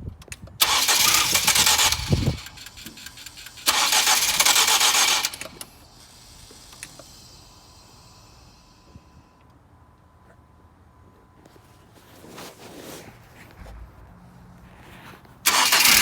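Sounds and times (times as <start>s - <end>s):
starter motor cranking: 0.6s - 7.5s, 15.5s - 16.0s.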